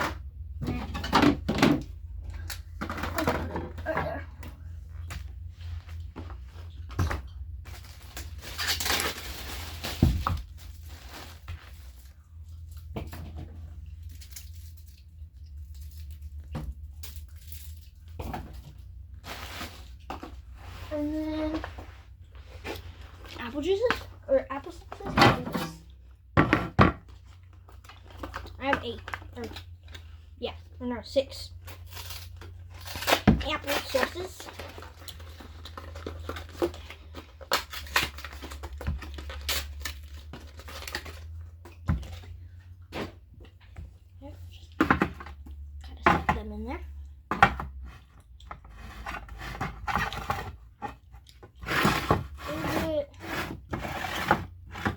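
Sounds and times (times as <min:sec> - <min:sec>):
food packages rustling and knocking: 0:00.0 - 0:30.4, 0:31.1 - 0:54.9
fridge hum: 0:00.0 - 0:54.9
plastic packaging crinkling: 0:07.4 - 0:12.2, 0:31.6 - 0:42.3.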